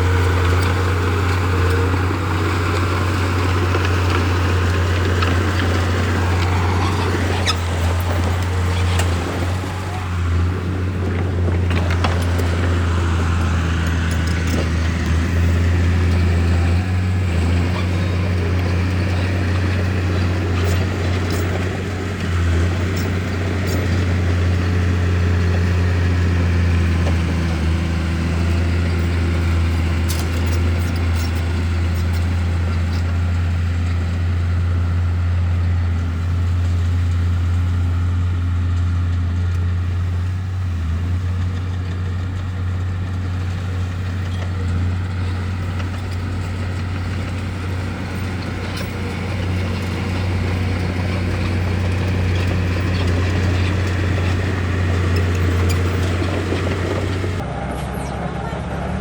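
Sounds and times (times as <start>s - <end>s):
bulldozer diesel engine drone: 0.0s - 59.0s.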